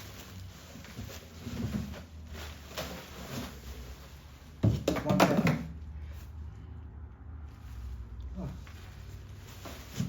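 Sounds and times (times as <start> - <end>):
packaging rustling and knocking: 0.0 - 5.7.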